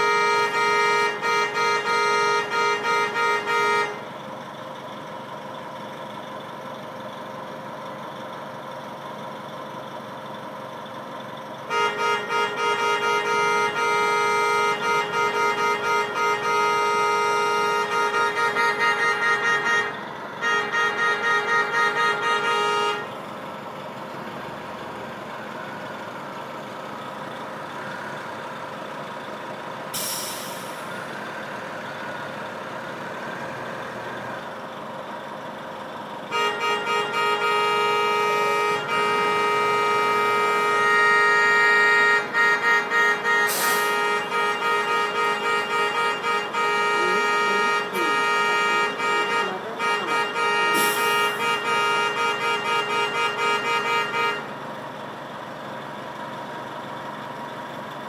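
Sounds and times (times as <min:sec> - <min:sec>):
bus horn honking: 0:00.0 - 0:04.4, 0:11.6 - 0:34.5, 0:35.9 - 0:54.9
vehicle noise: 0:00.0 - 0:58.0.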